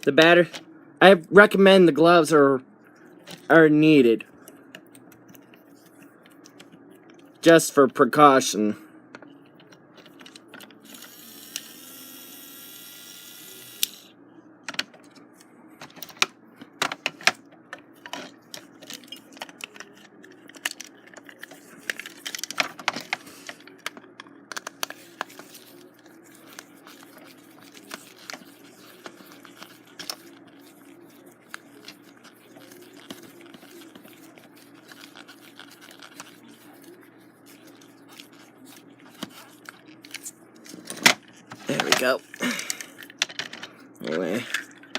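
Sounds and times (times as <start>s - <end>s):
plastic toy being handled: 14.7s - 44.9s.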